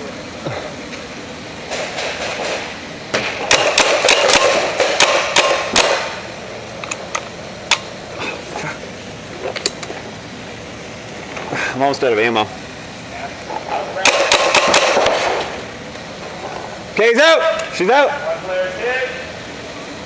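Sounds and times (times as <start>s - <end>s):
paintball marker shots: 3.4s - 6.2s, 14.0s - 15.4s.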